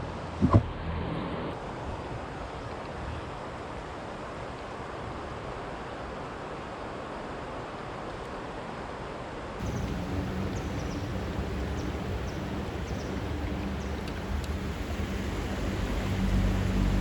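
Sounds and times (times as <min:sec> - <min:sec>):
creek water rushing: 0:09.6 - 0:17.0.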